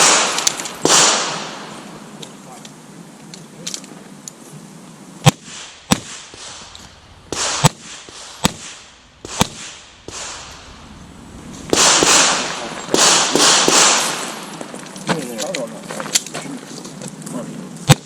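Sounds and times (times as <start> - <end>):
handgun shots: 0.0 - 1.6, 11.7 - 14.4
rushing noises: 5.5 - 15.1.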